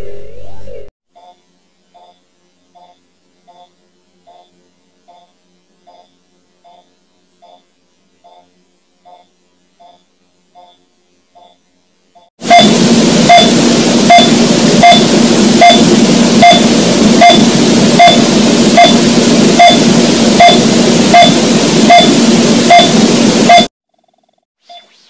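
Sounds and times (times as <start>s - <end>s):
static hiss: 1.2s - 23.6s
electronic heartbeat beeps: 2.0s - 2.2s, 2.8s - 4.5s, 5.1s - 10.8s, 12.5s - 23.7s.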